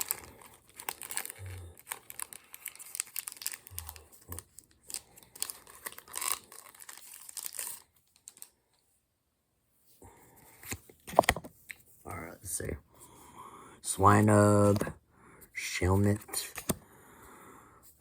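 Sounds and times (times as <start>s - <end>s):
foil wrapper crinkling and tearing: 0.0s - 8.6s.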